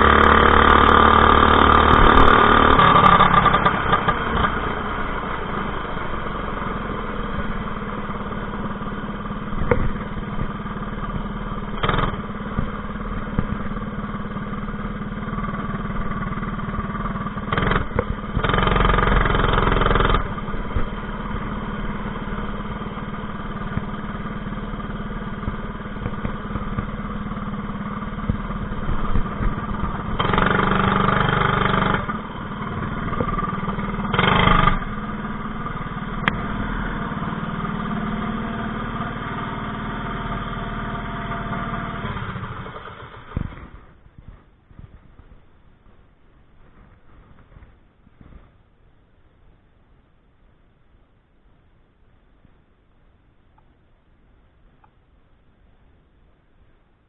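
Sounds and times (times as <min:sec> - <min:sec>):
small engine running: 0:00.0 - 0:45.3.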